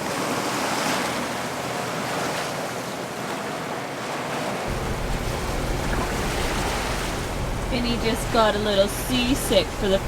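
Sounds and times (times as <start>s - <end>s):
rushing wind and water: 0.0s - 10.0s
low rumble: 4.7s - 10.0s
wind buffeting microphone: 4.7s - 10.0s.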